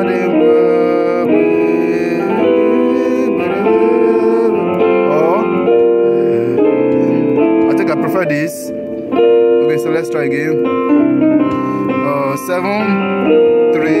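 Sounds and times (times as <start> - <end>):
keyboard playing sustained chords: 0.0 - 14.0.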